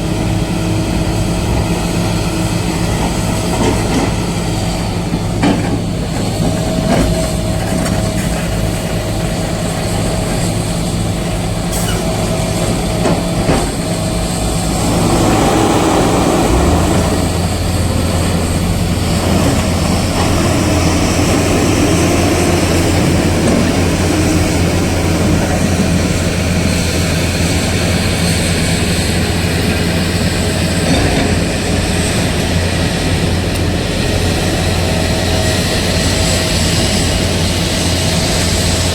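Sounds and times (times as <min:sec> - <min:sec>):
heavy diesel engine running: 0:00.0 - 0:38.9
shifting mid-range sound: 0:13.8 - 0:18.9.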